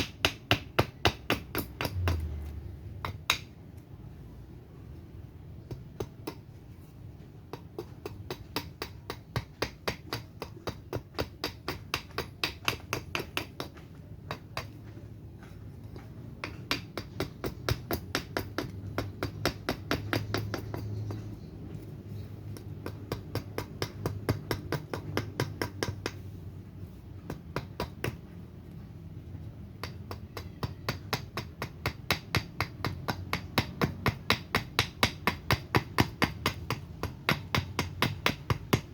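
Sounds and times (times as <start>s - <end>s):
axe chopping wood: 0.0s - 3.6s, 7.5s - 15.0s, 15.9s - 21.2s, 22.5s - 26.3s, 27.2s - 28.3s, 29.7s - 38.9s.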